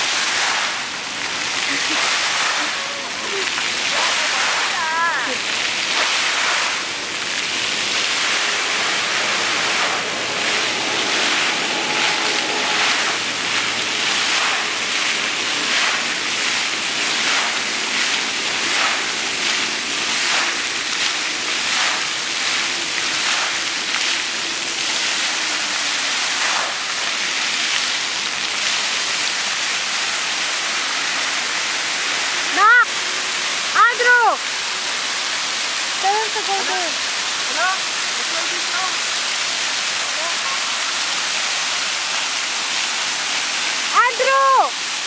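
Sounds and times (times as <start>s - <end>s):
fountain jets splashing: 0.0s - 45.0s.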